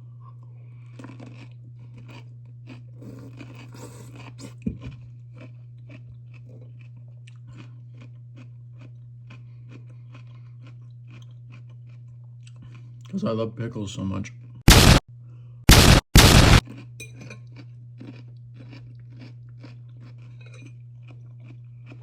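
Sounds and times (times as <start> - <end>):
person chewing pickles: 0.2 - 13.1, 15.8 - 22.0
steady low hum: 14.7 - 16.6.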